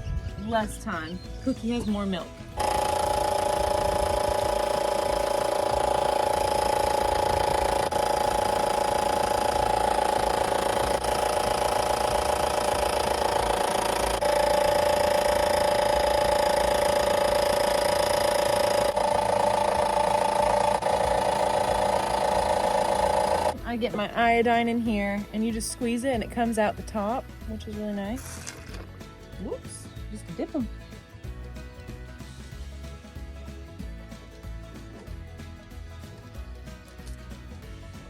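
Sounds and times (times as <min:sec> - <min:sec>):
vacuum pump motor humming: 0:02.5 - 0:24.2.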